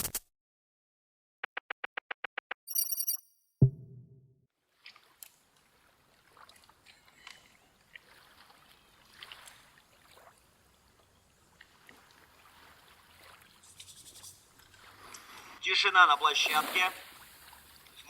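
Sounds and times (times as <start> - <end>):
faint sea waves: 5.0 - 18.0.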